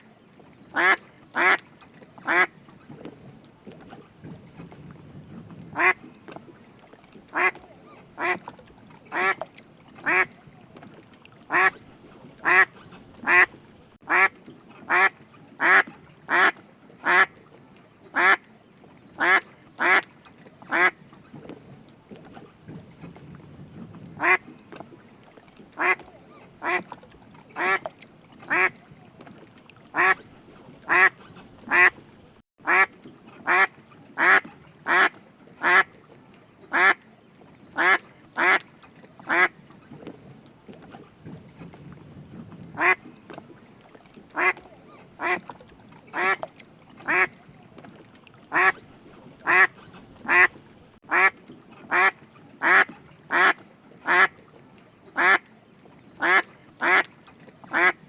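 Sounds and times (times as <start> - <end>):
duck quacking: 0.8 - 1.6, 2.3 - 2.5, 5.8 - 6.0, 7.3 - 7.6, 8.2 - 8.4, 9.1 - 9.4, 11.5 - 11.8, 12.4 - 13.5, 14.1 - 14.3, 14.9 - 17.3, 18.2 - 18.4, 19.2 - 20.0, 20.7 - 20.9, 24.2 - 24.4, 25.8 - 26.0, 26.6 - 26.8, 27.6 - 27.8, 30.0 - 30.2, 30.9 - 32.0, 32.6 - 35.9, 37.8 - 38.6, 42.8 - 43.0, 44.4 - 44.6, 45.2 - 45.4, 47.1 - 47.3, 48.5 - 48.8, 49.4 - 50.5, 51.1 - 51.3, 51.9 - 54.3, 56.2 - 57.1.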